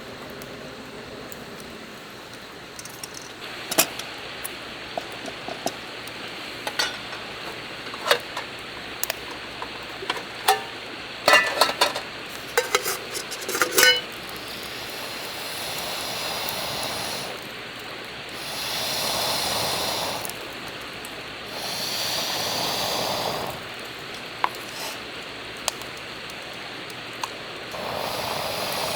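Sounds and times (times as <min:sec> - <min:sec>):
food sizzling: 0:01.4 - 0:28.9
metal cookware clinking: 0:02.8 - 0:04.1, 0:06.6 - 0:14.2.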